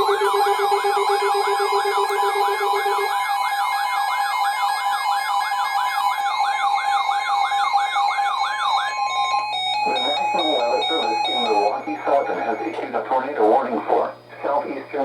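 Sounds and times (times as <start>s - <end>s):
electronic warning siren: 0.0s - 13.7s.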